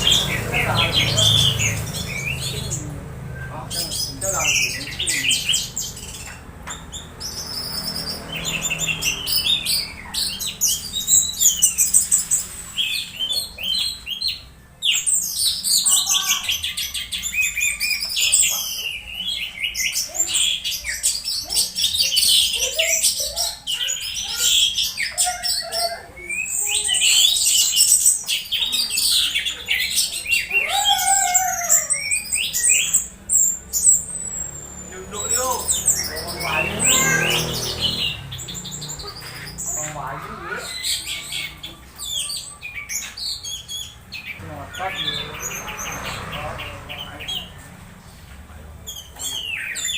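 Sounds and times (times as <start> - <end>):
thrush singing: 40.8 - 48.2.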